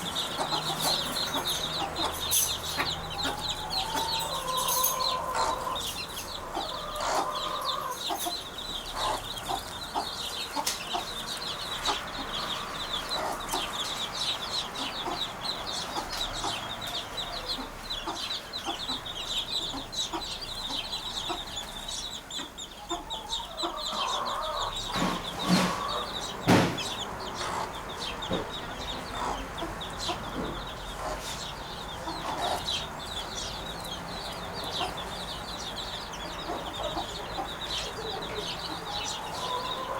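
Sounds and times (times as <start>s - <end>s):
birds clucking: 0.0s - 39.9s
sharp knocks: 24.9s - 27.0s.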